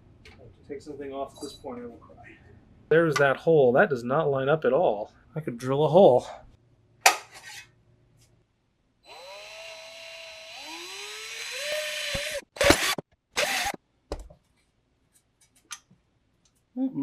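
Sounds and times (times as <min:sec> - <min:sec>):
drilling through sheet metal: 0:09.1 - 0:13.8
power drill whining: 0:09.1 - 0:13.8.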